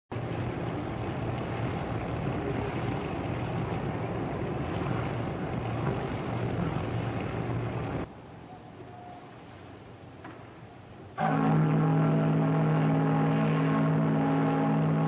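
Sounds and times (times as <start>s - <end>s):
low steam whistle blast: 11.2s - 15.0s.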